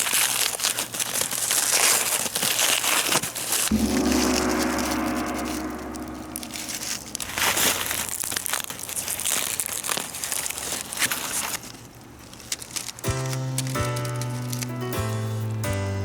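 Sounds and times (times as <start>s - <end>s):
wrapping crinkling and tearing: 0.0s - 3.7s, 8.2s - 14.9s.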